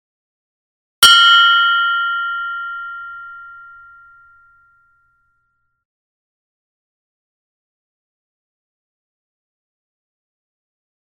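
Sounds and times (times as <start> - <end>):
meditation bell ringing: 1.0 - 5.6.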